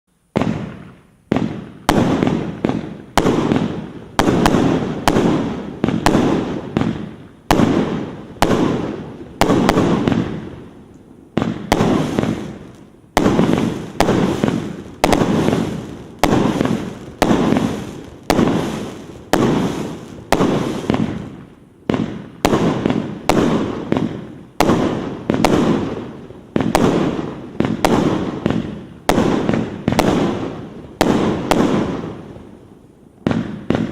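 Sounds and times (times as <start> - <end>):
firework bangs with rumble: 0.3 - 10.5, 11.4 - 12.6, 13.2 - 32.1.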